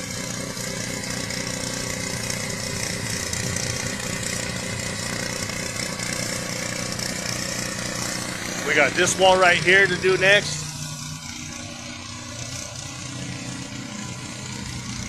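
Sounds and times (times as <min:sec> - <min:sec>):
pressure washer engine drone: 0:00.0 - 0:15.0.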